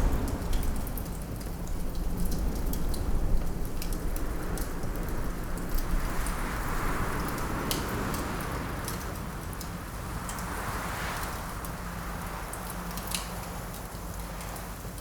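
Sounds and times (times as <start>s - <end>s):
wind rushing: 0.0s - 2.5s.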